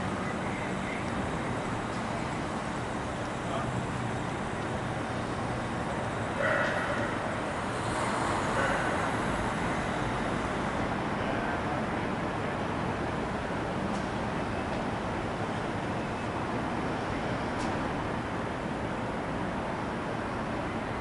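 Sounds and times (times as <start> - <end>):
outdoor rumble and hiss: 0.0 - 21.0.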